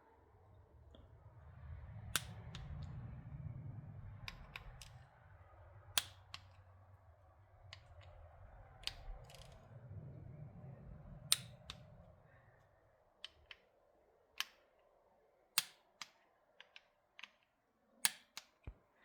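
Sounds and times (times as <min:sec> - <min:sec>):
torque wrench clicks: 0:06.0 - 0:06.6, 0:08.8 - 0:09.6.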